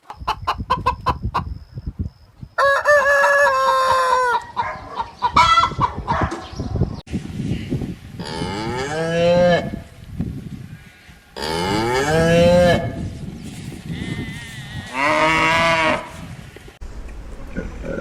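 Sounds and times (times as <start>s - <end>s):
cattle mooing: 11.4s - 12.9s, 13.9s - 16.2s.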